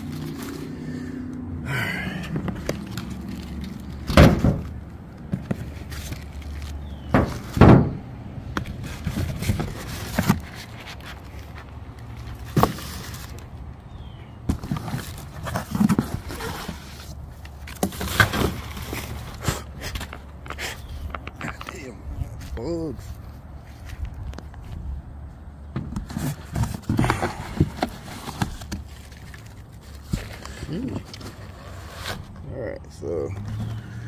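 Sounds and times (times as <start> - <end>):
knocks and thuds of parts: 2.2 - 6.2, 7.0 - 10.5, 12.5 - 13.3, 25.7 - 28.9
packaging rustling: 2.4 - 4.1.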